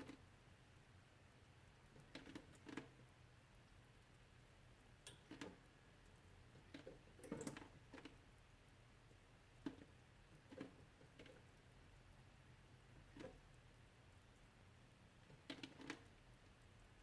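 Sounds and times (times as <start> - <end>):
water dripping: 4.9 - 8.3.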